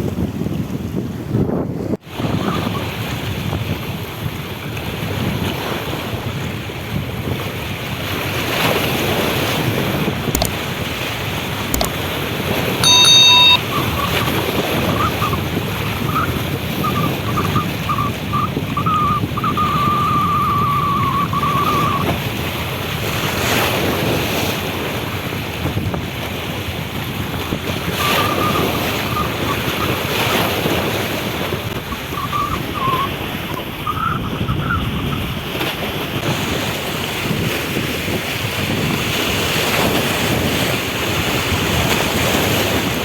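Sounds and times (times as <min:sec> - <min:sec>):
wind buffeting microphone: 0:00.0 - 0:12.8, 0:13.6 - 0:43.0
sea waves: 0:02.0 - 0:43.0
short loud tone: 0:12.8 - 0:13.9
wavering high tone: 0:12.8 - 0:14.3.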